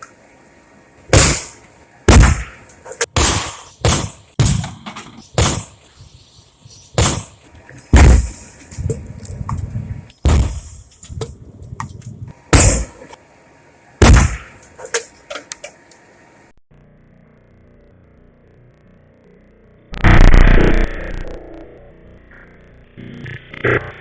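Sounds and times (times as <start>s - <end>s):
explosions with deep boom: 10.2s - 10.8s, 19.9s - 21.4s.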